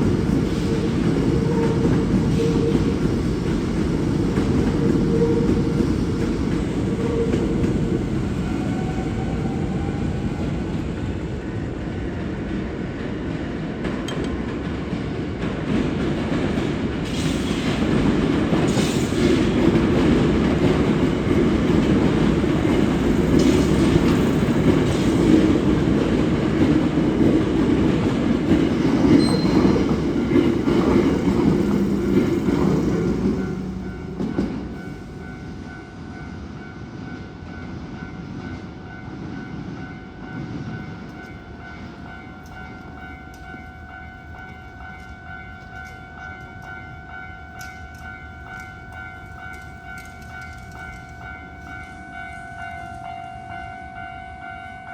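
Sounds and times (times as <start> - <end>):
train wheels rumbling on rails: 0.0 - 54.7
level crossing warning ringing: 21.2 - 54.9.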